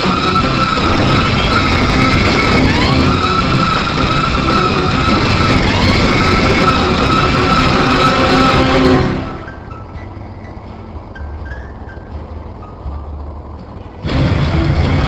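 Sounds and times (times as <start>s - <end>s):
siren wailing: 0.0s - 10.0s
heavy steady rumble: 0.0s - 15.0s.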